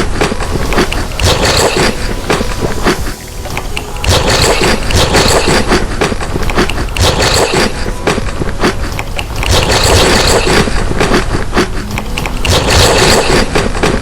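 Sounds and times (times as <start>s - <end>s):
crunching and chewing food: 3.6s - 14.0s.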